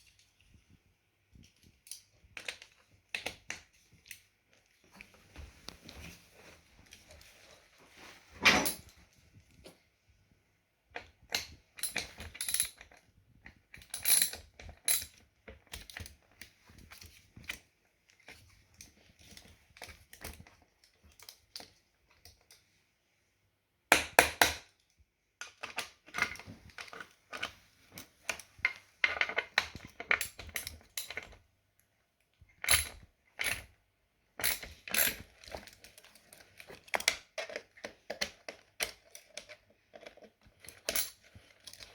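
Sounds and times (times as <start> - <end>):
metal tools clinking: 11.8 - 12.9.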